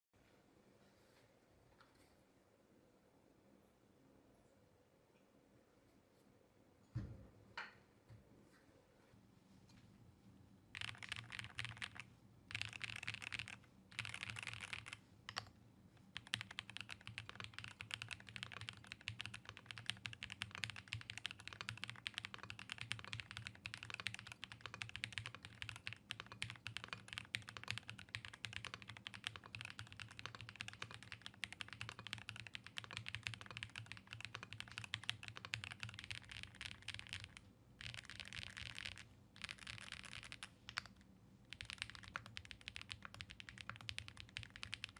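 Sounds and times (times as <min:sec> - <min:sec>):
mechanical keyboard typing: 0:10.7 - 0:15.5, 0:16.1 - 0:44.9.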